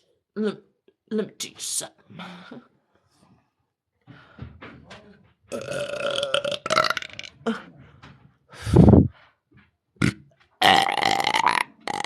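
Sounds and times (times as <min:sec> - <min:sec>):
woman belching: 0:05.5 - 0:07.6, 0:10.0 - 0:12.0.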